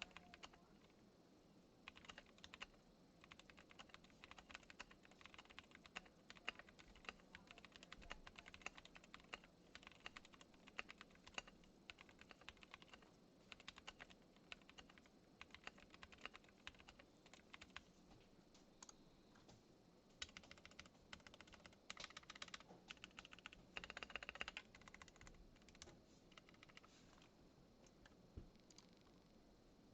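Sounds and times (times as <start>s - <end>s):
mechanical keyboard typing: 0.0s - 1.0s, 1.8s - 17.8s, 20.2s - 26.9s, 27.8s - 29.2s.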